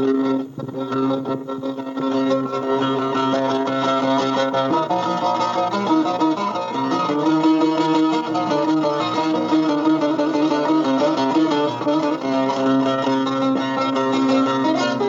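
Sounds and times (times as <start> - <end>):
plucked string folk music: 0.0 - 15.0.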